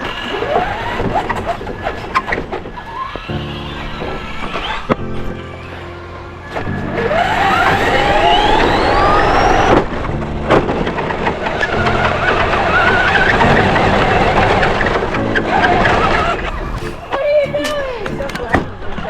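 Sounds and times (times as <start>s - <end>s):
toy car electric motor whining: 15.8s - 18.8s.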